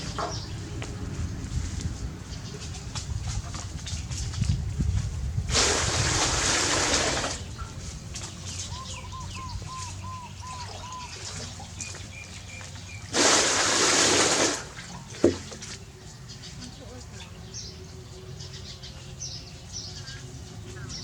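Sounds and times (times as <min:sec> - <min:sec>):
water splashing: 0:05.5 - 0:08.7, 0:09.7 - 0:15.9.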